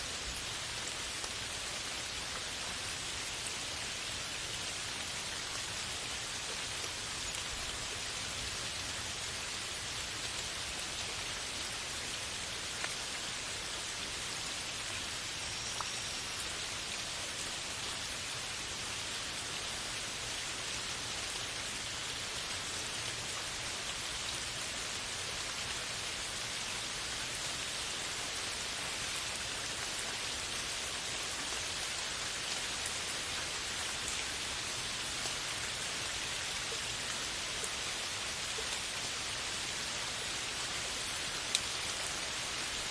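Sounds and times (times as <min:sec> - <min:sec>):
heavy rain on foliage: 0:00.0 - 0:42.9.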